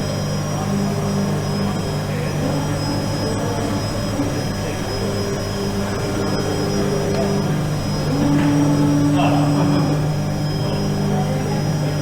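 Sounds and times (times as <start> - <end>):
cnc machinery humming: 0.0 - 12.0
higher shifting machine tones: 0.0 - 12.0.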